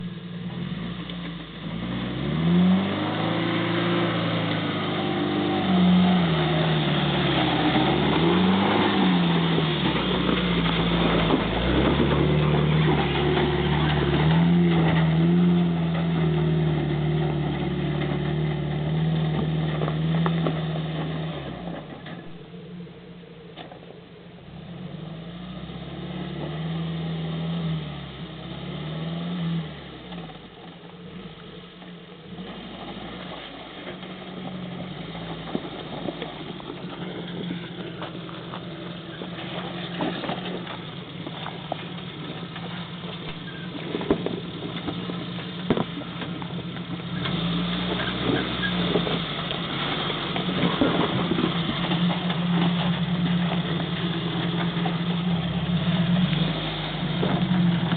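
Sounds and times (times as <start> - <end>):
car engine revving: 0.0 - 57.9.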